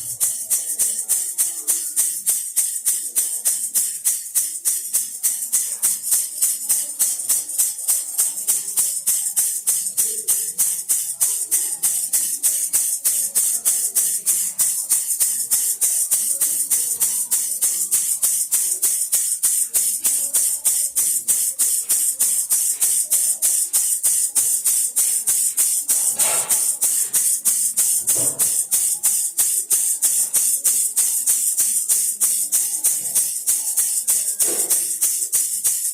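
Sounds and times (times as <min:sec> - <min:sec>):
baby rattle shaking: 0:00.0 - 0:35.9.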